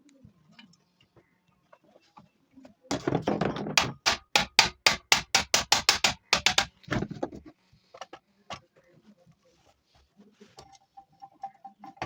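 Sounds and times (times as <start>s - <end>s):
rattling knocks: 2.9s - 6.8s.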